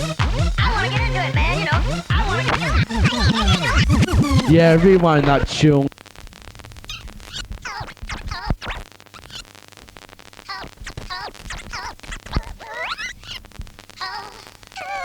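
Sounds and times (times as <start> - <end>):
vocal snatches sweeping in pitch: 0.0 - 5.9
vinyl record scratched back and forth: 0.0 - 15.0.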